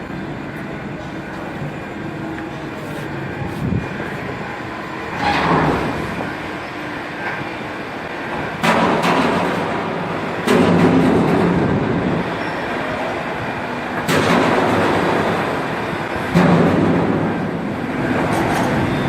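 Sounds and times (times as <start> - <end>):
heavy bangs with rumbling: 8.5 - 12.3, 14.0 - 18.9.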